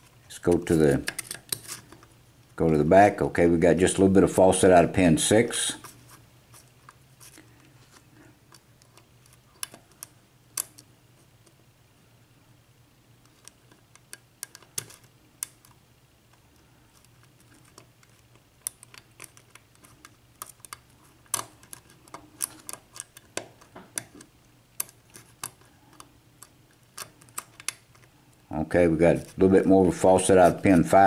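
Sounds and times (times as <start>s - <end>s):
lock pick clicking and scraping: 0.6s - 2.1s, 8.5s - 10.9s, 13.2s - 28.1s.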